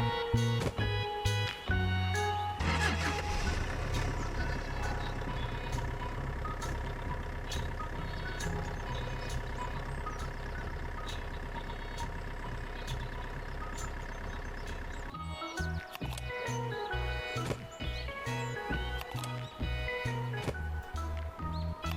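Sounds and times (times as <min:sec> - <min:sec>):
small vehicle engine hum: 0:00.0 - 0:21.9
sharp ticks: 0:04.8 - 0:16.7.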